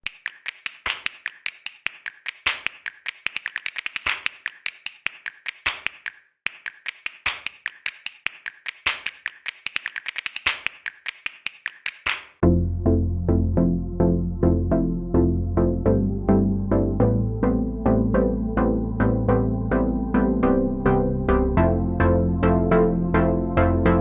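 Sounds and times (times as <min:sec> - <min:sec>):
rhythmic sharp taps and clicks: 0:00.0 - 0:12.4
bass-heavy electronic music: 0:12.4 - 0:24.0.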